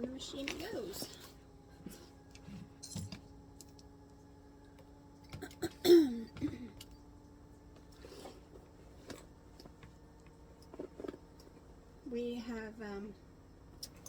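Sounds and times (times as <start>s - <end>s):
person clearing throat: 5.4s - 6.8s.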